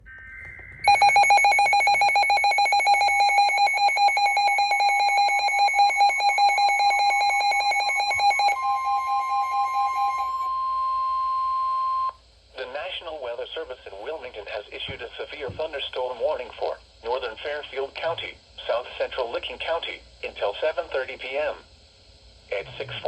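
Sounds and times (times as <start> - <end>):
pulsing electronic alarm beep: 0.0 - 12.1
steady alarm tone: 0.0 - 12.2.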